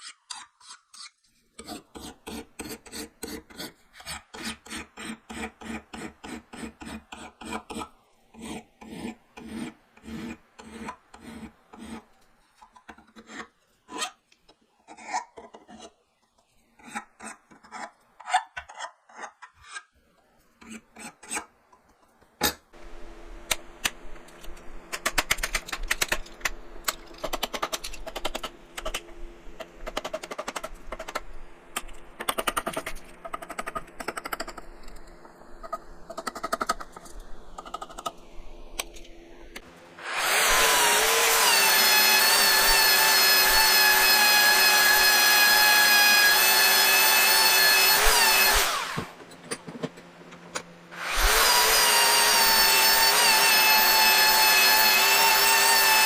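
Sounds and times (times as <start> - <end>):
power saw cutting wood: 39.6 - 49.2, 50.9 - 56.0.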